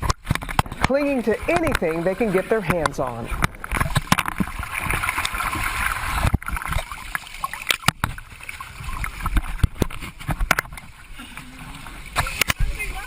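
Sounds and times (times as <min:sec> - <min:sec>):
camera knocks and crackles: 0:00.0 - 0:01.9, 0:02.7 - 0:05.4, 0:07.7 - 0:08.2, 0:09.2 - 0:10.9
seawater splashing: 0:00.0 - 0:13.0.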